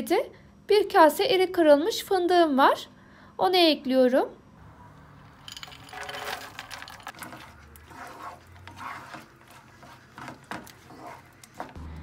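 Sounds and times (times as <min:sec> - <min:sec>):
nuts clattering into a pan: 0:05.3 - 0:07.8.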